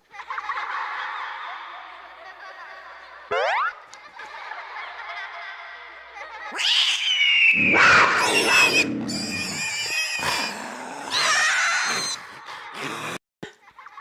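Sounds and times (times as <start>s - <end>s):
cat-like screech: 6.6s - 12.2s.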